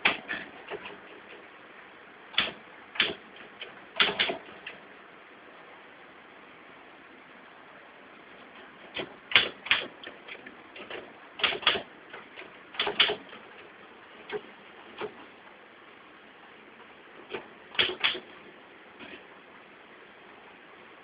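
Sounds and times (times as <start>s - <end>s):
typewriter keys striking: 2.4s - 4.8s, 8.9s - 11.9s, 12.7s - 13.4s, 17.7s - 18.3s.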